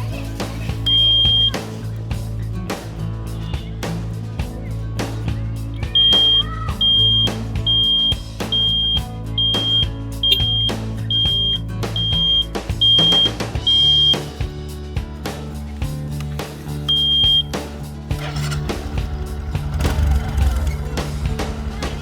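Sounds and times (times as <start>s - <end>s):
background music: 0.0s - 22.0s
high electronic beeps: 0.9s - 1.6s, 6.0s - 14.2s, 16.9s - 17.6s.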